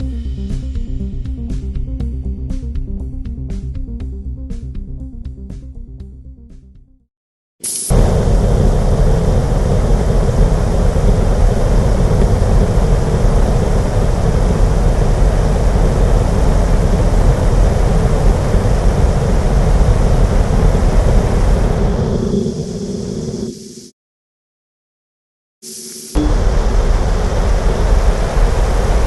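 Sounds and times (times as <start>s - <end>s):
rocket engine firing: 7.6s - 23.9s, 26.2s - 29.0s
faint steady hum: 26.2s - 29.0s.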